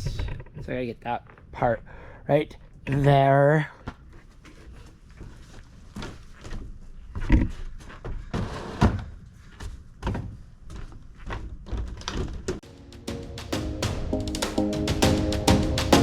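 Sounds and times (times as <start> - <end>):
irregular thumps and knocks: 6.5 - 12.7.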